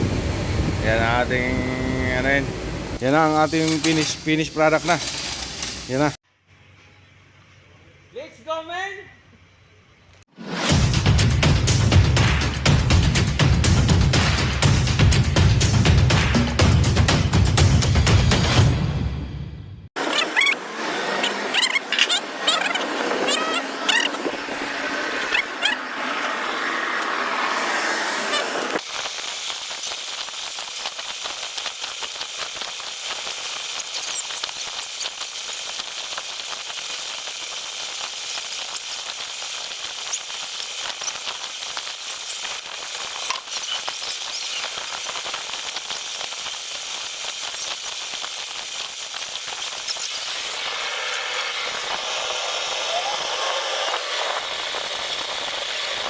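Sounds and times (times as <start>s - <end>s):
steady hiss: 0.0s - 6.2s, 20.0s - 56.0s.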